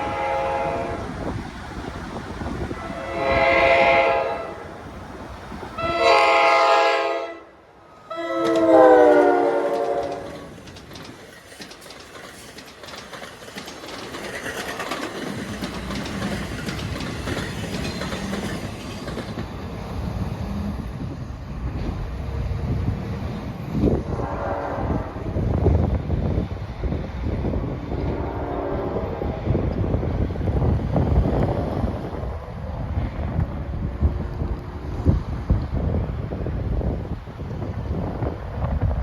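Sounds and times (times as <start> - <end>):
locomotive horn blasts: 0.0 - 1.2, 2.7 - 4.8, 5.8 - 10.5, 24.1 - 25.2, 28.0 - 29.3
train rumbling past: 0.0 - 39.0
wheels clicking over rail joints: 8.0 - 20.7.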